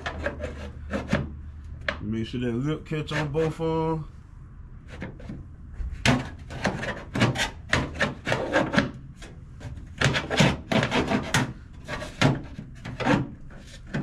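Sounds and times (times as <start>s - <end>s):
trim piece scraping and knocking: 0.0s - 2.0s, 4.9s - 14.0s.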